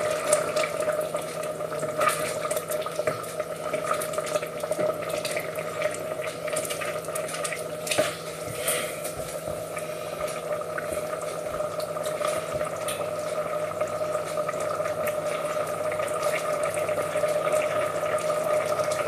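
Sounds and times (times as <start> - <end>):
rice bubbling and popping in pan: 0.0 - 19.0
steady hum: 0.0 - 19.0.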